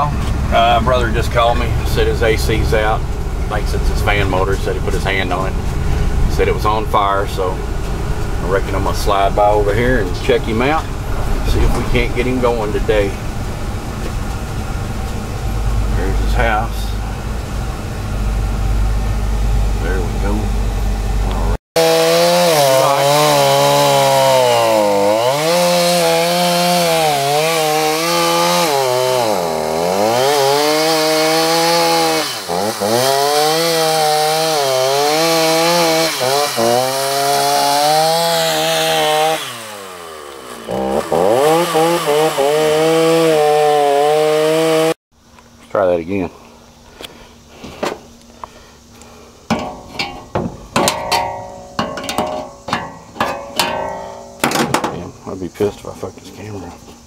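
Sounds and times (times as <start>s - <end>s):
engine running with buzzing tone: 0.0s - 45.7s
sharp metallic strikes: 49.5s - 55.1s.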